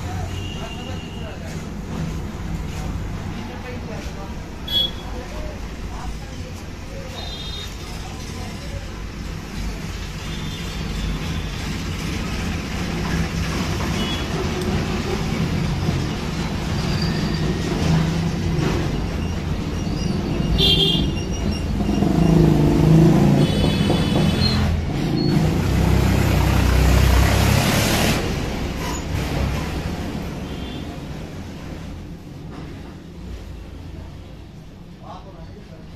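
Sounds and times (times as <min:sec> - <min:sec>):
road traffic passing: 0:00.0 - 0:35.9
vehicle horns tooting: 0:00.2 - 0:01.4, 0:04.6 - 0:05.1, 0:07.2 - 0:07.8, 0:13.9 - 0:14.6, 0:20.5 - 0:21.4, 0:23.2 - 0:24.8.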